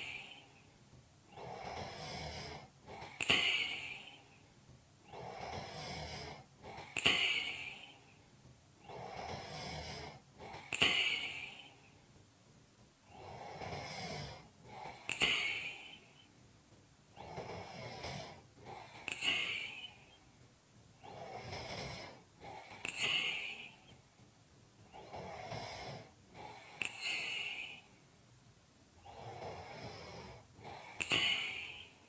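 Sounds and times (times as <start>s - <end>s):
person snoring: 1.3s - 4.2s, 5.1s - 8.0s, 8.8s - 11.8s, 13.1s - 16.1s, 17.2s - 20.1s, 21.0s - 24.0s, 24.9s - 27.9s, 29.0s - 31.9s.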